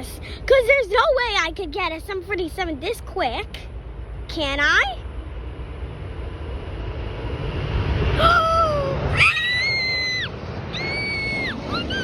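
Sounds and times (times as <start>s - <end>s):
jet airliner approaching: 3.4s - 12.0s
high-pitched squeals: 8.2s - 12.0s.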